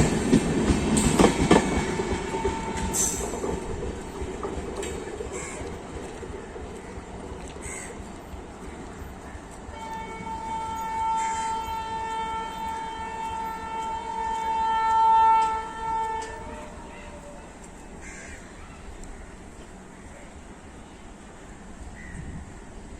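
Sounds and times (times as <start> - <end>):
train running noise: 0.0 - 22.9
locomotive horn blast: 1.0 - 3.6, 9.7 - 17.5.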